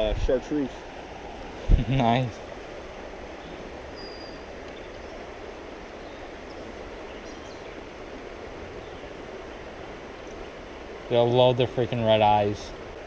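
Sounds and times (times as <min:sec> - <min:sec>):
creek water flowing: 0:00.0 - 0:13.0
faint high chirp: 0:03.4 - 0:05.0.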